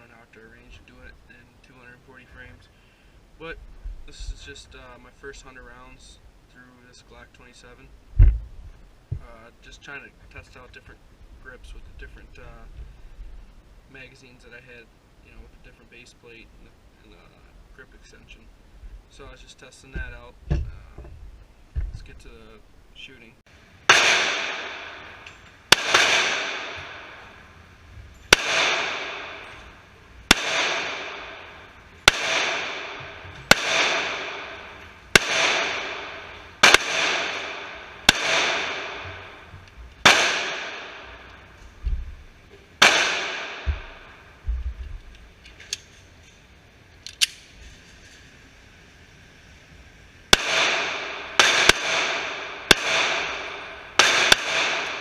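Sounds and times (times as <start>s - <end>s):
pistol shots with echo: 23.9s - 27.4s, 28.3s - 29.6s, 30.3s - 41.4s, 42.8s - 44.2s, 50.3s - 55.0s.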